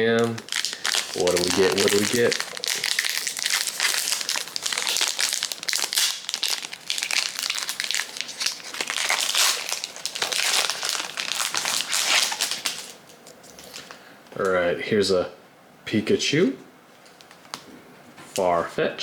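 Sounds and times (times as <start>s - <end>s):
foil wrapper crinkling: 0.0s - 14.0s.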